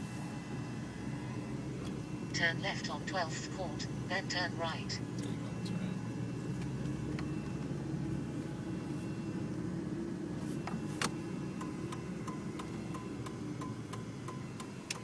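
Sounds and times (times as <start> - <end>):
car engine and road noise: 0.0 - 15.0
turn-signal indicator ticking: 11.6 - 15.0.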